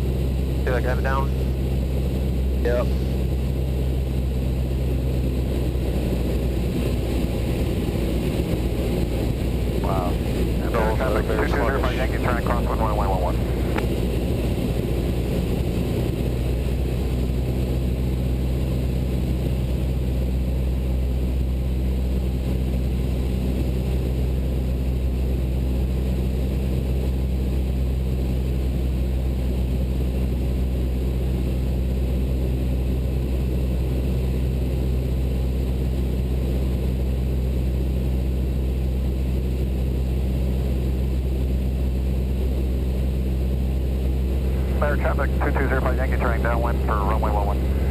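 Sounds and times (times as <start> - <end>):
propeller plane engine drone: 0.0 - 47.9.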